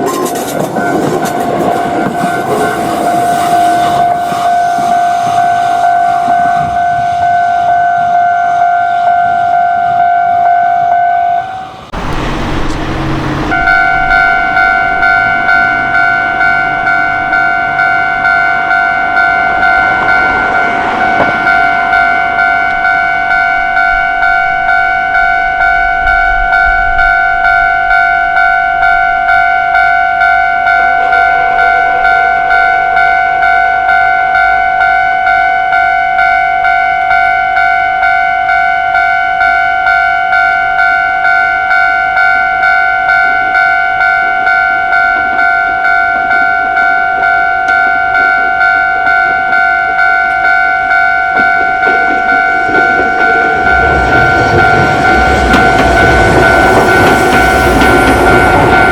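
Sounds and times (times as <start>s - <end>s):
railroad crossing bell ringing: 0.0s - 58.9s
low rumble: 11.9s - 29.3s.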